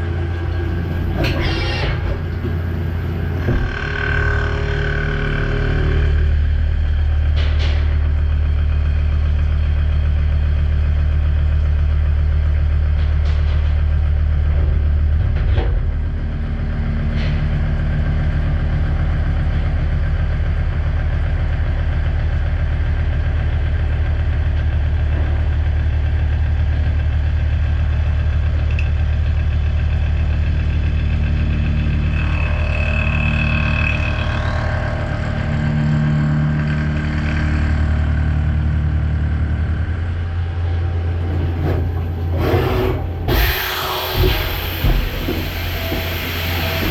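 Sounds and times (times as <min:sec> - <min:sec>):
high machine whine: 0:00.0 - 0:08.7, 0:28.4 - 0:46.9
machine hum: 0:00.0 - 0:46.9.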